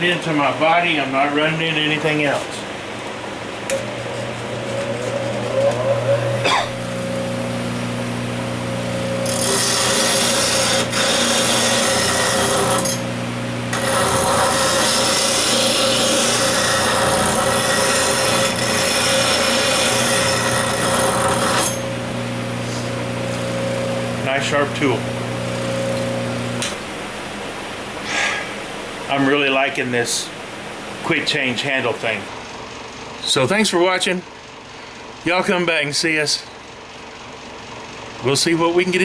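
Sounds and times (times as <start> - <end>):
bench grinder motor running: 3.7 - 26.8
steel grinding on wheel: 4.1 - 7.1, 8.7 - 13.1, 13.7 - 26.6.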